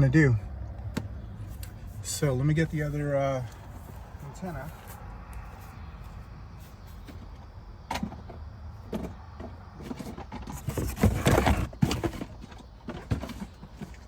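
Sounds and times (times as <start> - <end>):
clunks and rustling: 6.9 - 14.0.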